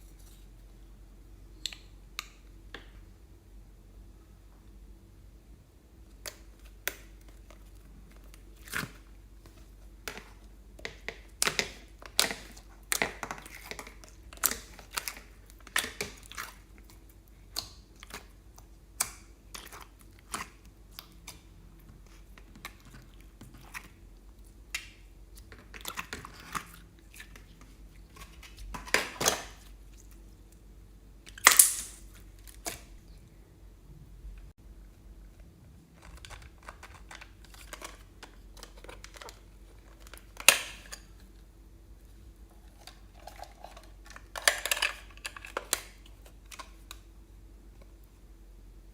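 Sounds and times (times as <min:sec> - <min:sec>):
slime popping and crackling: 0:31.3 - 0:32.8.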